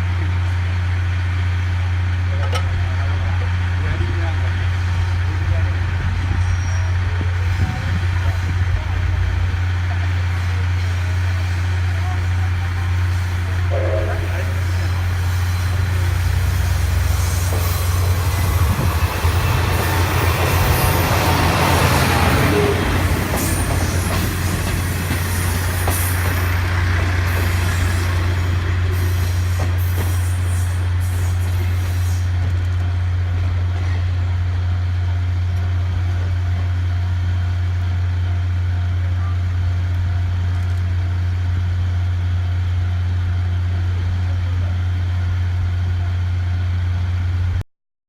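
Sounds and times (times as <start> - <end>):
train wheels on rails: 0.2 - 47.6
diesel engine hum: 7.0 - 29.8.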